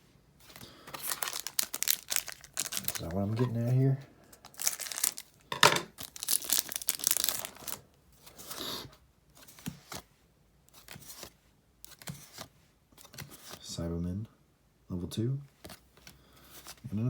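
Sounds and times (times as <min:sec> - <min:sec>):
wrapper tearing and crinkling: 0:00.9 - 0:07.8.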